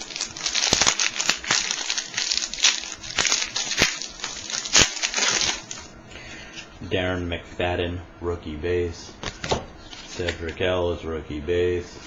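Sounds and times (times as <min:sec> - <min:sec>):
foil wrapper crinkling: 0:00.0 - 0:05.9.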